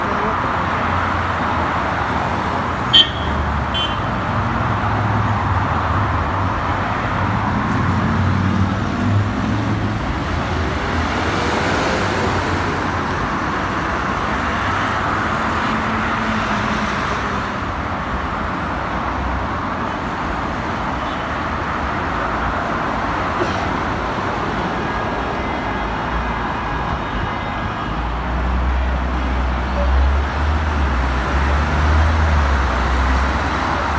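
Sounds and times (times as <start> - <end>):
road traffic rumble: 0.0 - 33.9.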